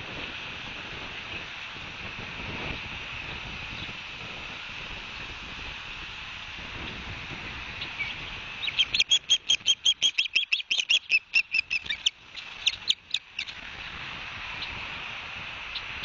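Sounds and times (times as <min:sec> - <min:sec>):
osprey chirping: 0:07.9 - 0:13.6.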